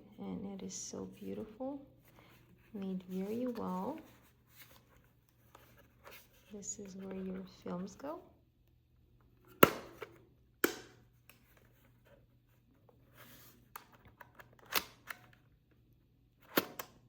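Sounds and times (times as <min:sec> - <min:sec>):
plastic camera clicks: 0:13.8 - 0:15.4.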